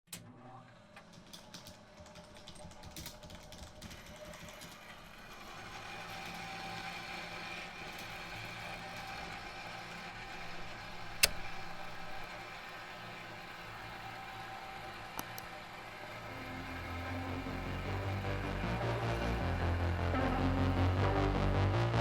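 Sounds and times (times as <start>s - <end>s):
small machine whining: 0.2s - 22.0s
sharp click: 10.4s - 12.3s.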